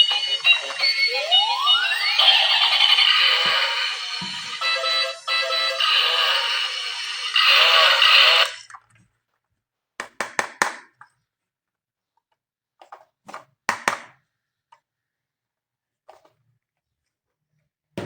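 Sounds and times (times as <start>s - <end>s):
toy electronic tune: 0.0s - 8.7s.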